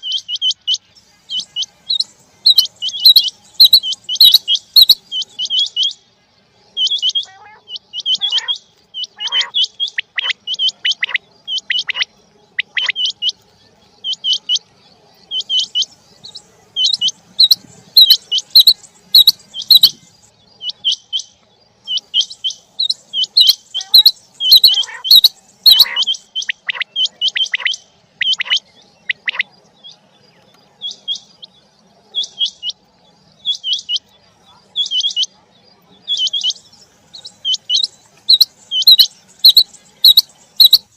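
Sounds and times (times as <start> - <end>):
quail whistled calls: 0.0 - 6.1, 6.7 - 13.4, 14.0 - 14.7, 15.3 - 30.0, 30.8 - 31.5, 32.1 - 34.1, 34.7 - 35.4, 36.0 - 40.9.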